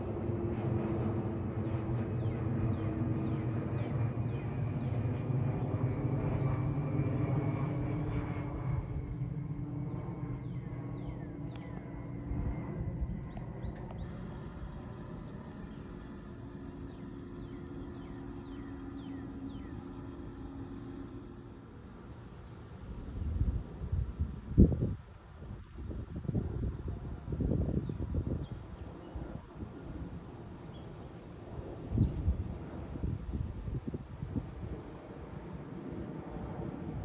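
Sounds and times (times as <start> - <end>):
jet engine rumble: 0.0 - 37.0.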